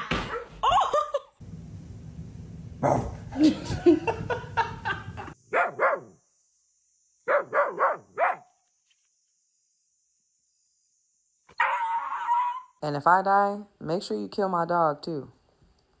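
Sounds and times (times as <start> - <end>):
dog barking: 2.8 - 3.3, 5.5 - 6.2, 7.3 - 8.5.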